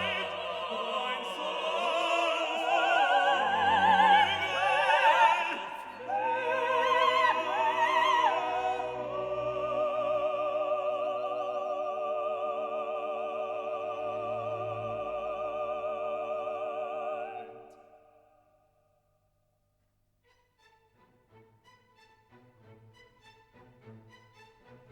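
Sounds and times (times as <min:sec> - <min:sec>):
operatic singing voice: 0:00.0 - 0:18.3.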